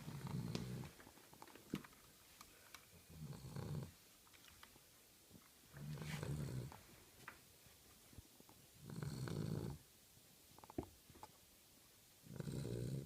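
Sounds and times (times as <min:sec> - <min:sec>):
dog snoring: 0:00.0 - 0:01.0, 0:03.1 - 0:04.0, 0:05.8 - 0:06.8, 0:08.8 - 0:09.8, 0:12.2 - 0:13.0.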